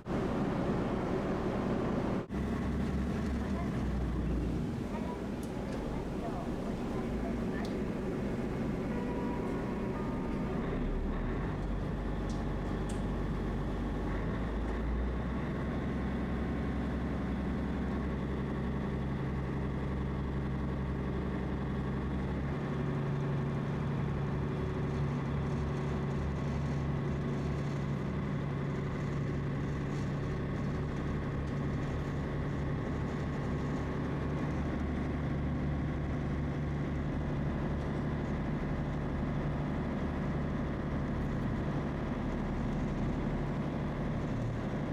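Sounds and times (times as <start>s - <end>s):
boat engine droning: 0.0s - 27.9s.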